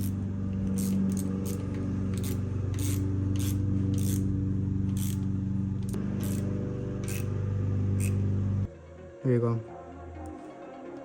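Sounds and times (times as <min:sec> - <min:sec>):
hand ratchet clicking: 0:00.0 - 0:04.3, 0:04.9 - 0:05.2, 0:05.9 - 0:06.4, 0:07.0 - 0:07.3
steady low hum: 0:00.0 - 0:08.9.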